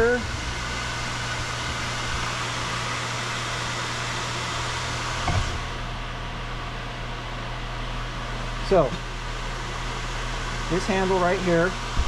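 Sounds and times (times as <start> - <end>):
brake lathe motor humming: 0.0 - 5.9.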